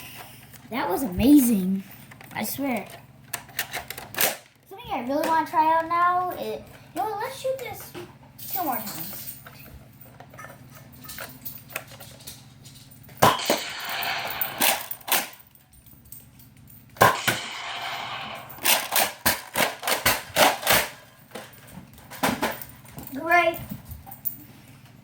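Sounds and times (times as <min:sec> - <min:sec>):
gunshot bangs with hiss: 0:13.2 - 0:15.3, 0:17.0 - 0:20.9
sharp cracks of toy blaster: 0:13.2 - 0:15.4, 0:17.0 - 0:21.0.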